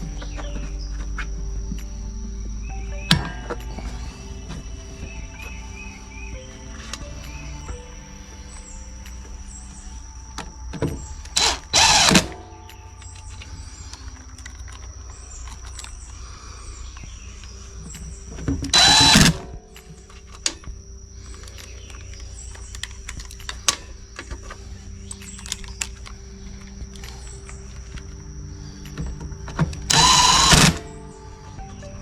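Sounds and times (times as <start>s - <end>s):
high chirring: 0.0s - 32.0s
short mechanical whirs: 29.9s - 30.9s.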